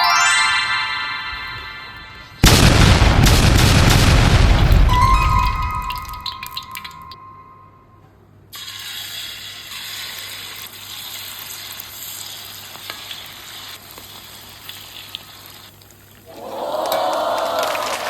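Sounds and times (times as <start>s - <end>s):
batter sizzling in hot oil: 8.6s - 16.2s.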